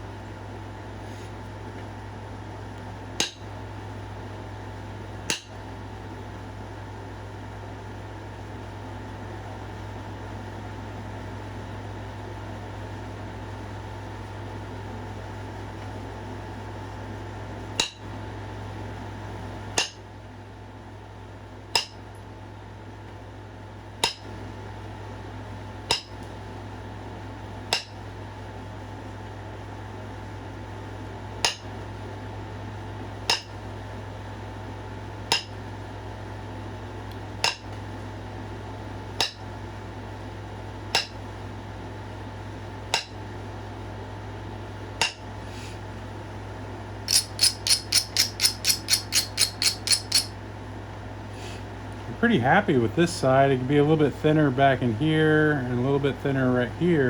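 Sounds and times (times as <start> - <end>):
fan-like hum: 0.0 - 57.0
stone clicking with glassy ring: 47.1 - 50.3.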